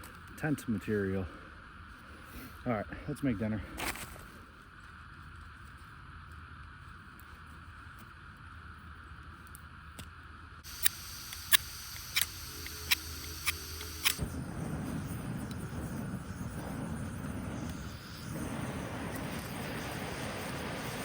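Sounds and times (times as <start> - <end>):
igniter clicks: 10.6 - 14.2
burner rushing flame: 10.6 - 21.0
gas hissing: 10.6 - 21.0.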